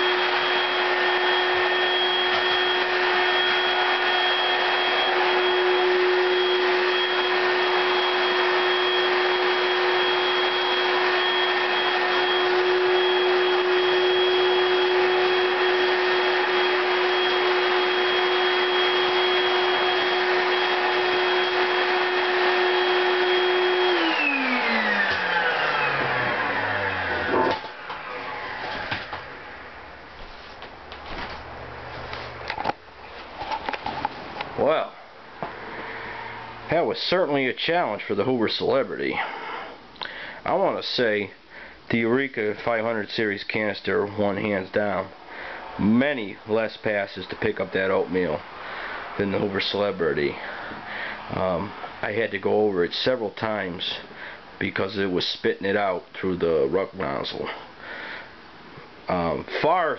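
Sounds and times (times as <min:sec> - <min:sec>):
vacuum cleaner motor whining: 0:00.0 - 0:30.0, 0:33.7 - 0:36.9.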